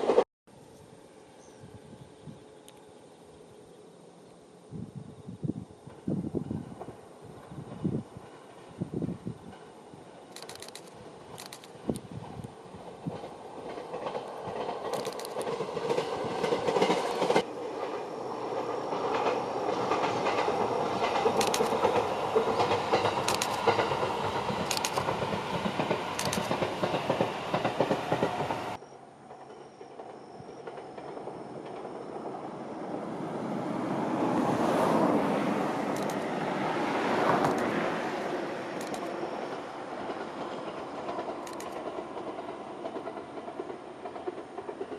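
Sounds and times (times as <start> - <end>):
train running past: 0.0 - 44.9
wheels clicking over rail joints: 5.8 - 32.4, 35.9 - 36.4, 37.1 - 37.9, 38.7 - 44.9.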